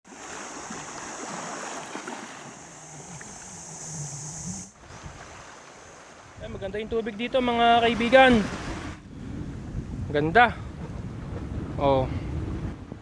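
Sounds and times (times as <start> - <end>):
waves washing on a beach: 0.0 - 9.9.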